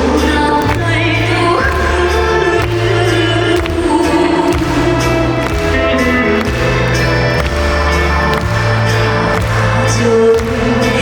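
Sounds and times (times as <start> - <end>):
trot song accompaniment: 0.0 - 11.0.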